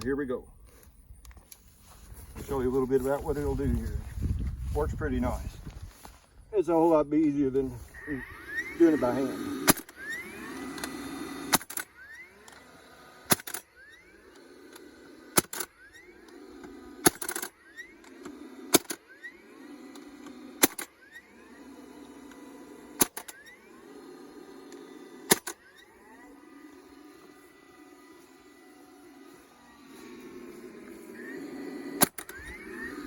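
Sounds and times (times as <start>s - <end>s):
short rising whine: 1.0s - 33.0s
stapler motor whirring: 6.9s - 33.0s
stapler driving staples into wood: 9.6s - 9.9s, 11.5s - 11.9s, 13.3s - 13.6s, 15.3s - 15.7s, 17.0s - 17.5s, 18.7s - 19.0s, 19.9s - 20.9s, 23.0s - 23.4s, 25.3s - 25.6s, 32.0s - 32.5s.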